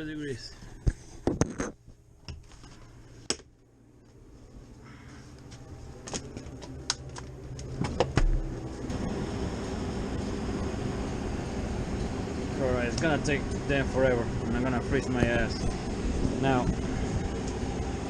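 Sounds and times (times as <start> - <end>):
low steady hum: 0.0 - 18.0.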